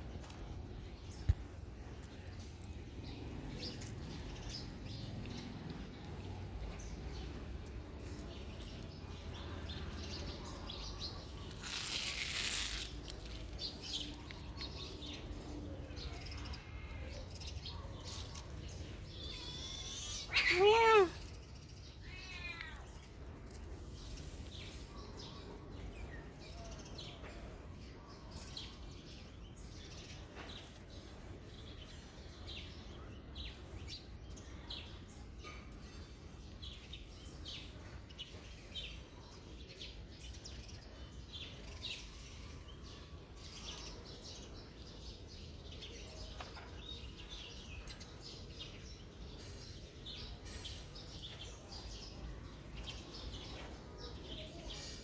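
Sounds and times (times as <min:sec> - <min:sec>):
cat meowing: 0:19.2 - 0:21.2, 0:22.0 - 0:23.0.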